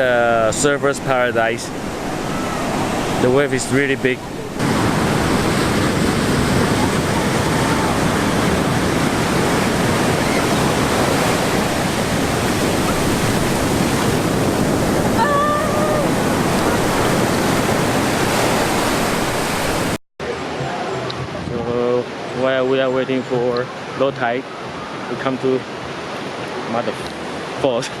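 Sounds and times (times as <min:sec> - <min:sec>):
ocean surf breaking: 0:00.0 - 0:22.4.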